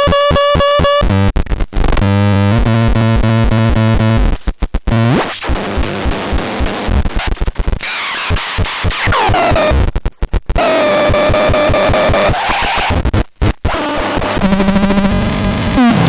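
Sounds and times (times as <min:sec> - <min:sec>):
stuttering noisy synthesizer sound: 0:04.9 - 0:16.0
synthesizer tone sweeping down: 0:15.8 - 0:16.0.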